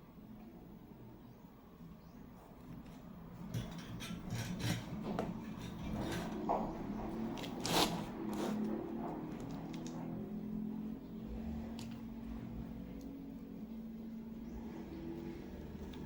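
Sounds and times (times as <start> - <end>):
scraping of small hard parts: 3.4 - 8.7.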